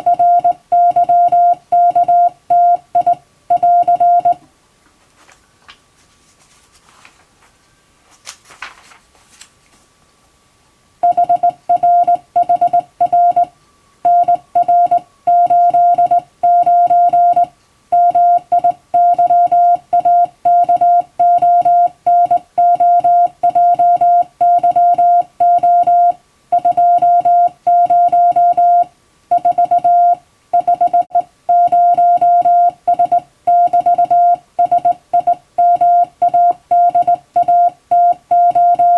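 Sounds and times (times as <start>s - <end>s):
morse code beeps: 0.0s - 4.4s, 11.0s - 13.5s, 14.1s - 38.9s
brief rustle: 4.9s - 9.9s.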